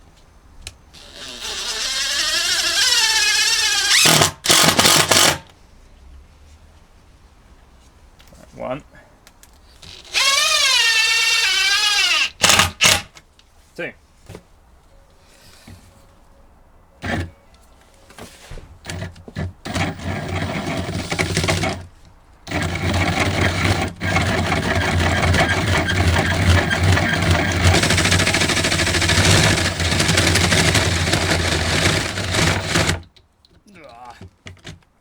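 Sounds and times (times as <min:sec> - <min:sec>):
electric drill boring into laminate: 0:01.0 - 0:05.4, 0:09.8 - 0:13.1, 0:17.0 - 0:17.3, 0:18.9 - 0:19.1, 0:19.7 - 0:21.9, 0:22.5 - 0:33.1.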